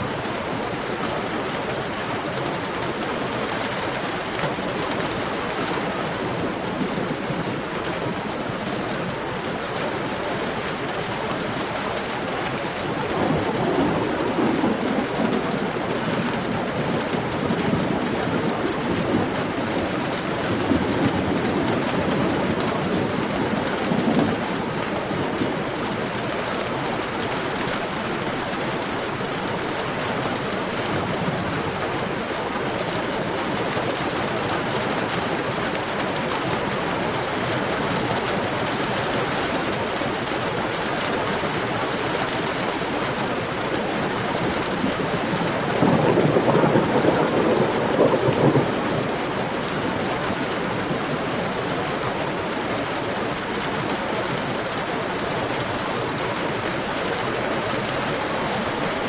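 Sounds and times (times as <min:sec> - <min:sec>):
heavy rain: 0:00.0 - 0:59.0
thunder rumble: 0:12.0 - 0:29.7, 0:42.8 - 0:51.7.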